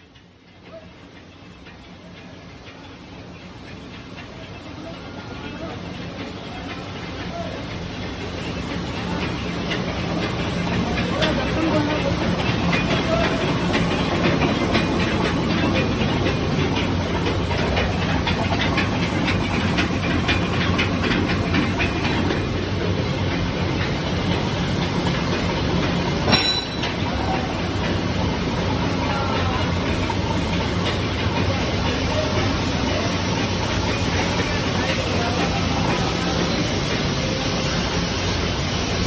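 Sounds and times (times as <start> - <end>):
blower rush with low hum: 6.0 - 39.0.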